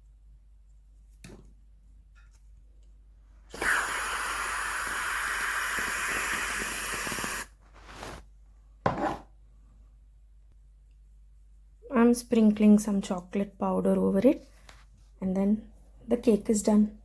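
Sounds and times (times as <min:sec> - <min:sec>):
aerosol whipped cream can hissing: 0:03.5 - 0:08.2.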